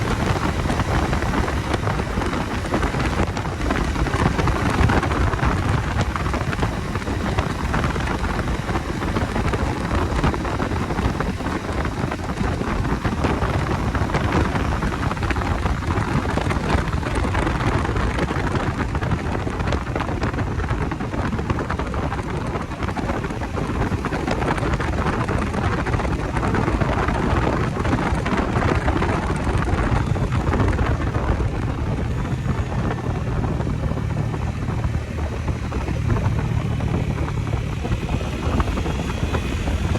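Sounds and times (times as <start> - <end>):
motorcycle engine running: 0.0 - 39.9
wind rush over microphone: 0.0 - 39.9.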